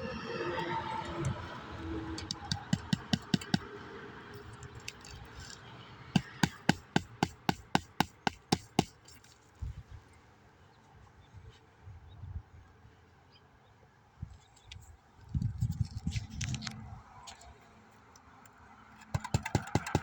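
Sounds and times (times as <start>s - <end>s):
hammer striking nails: 2.3s - 3.7s, 6.2s - 9.2s, 19.1s - 20.0s.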